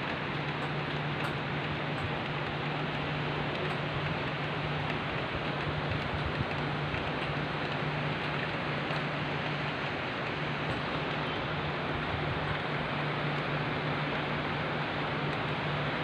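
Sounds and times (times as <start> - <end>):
heavy rain: 0.0 - 16.0.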